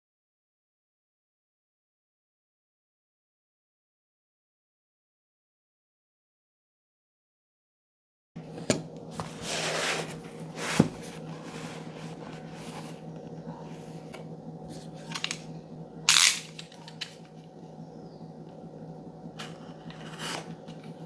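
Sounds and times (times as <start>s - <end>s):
low steady hum: 8.4s - 21.0s
packaging rustling and scraping: 9.0s - 15.4s, 19.4s - 21.0s.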